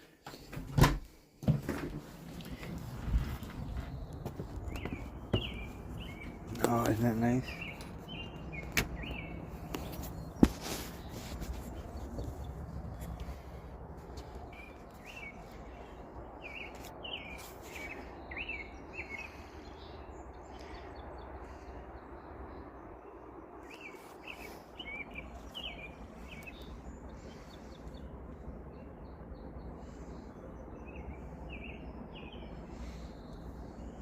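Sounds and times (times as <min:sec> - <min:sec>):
steady low background noise: 0:00.8 - 0:34.0
small birds chirping: 0:02.3 - 0:34.0.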